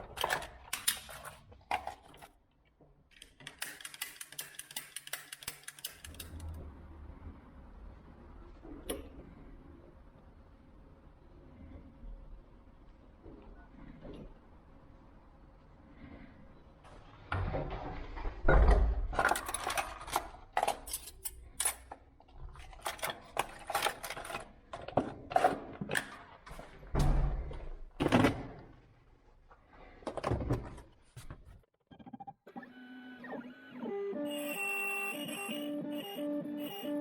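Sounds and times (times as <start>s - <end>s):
metal tools clicking and rattling: 19.2s - 22.0s, 22.6s - 24.5s.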